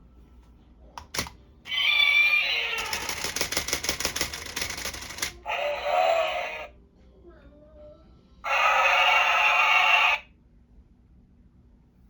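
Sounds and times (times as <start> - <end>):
electronic screeching animal cry: 1.7 - 3.3, 5.4 - 6.7, 8.4 - 10.3
rapid mechanical rattle: 2.7 - 5.4.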